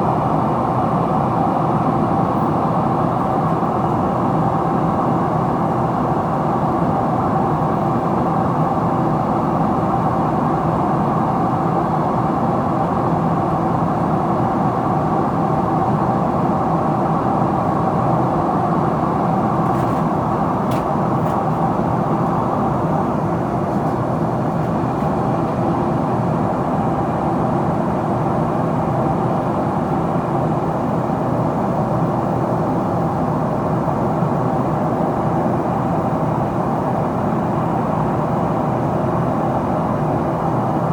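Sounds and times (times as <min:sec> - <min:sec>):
jet engines humming: 0:18.0 - 0:26.8.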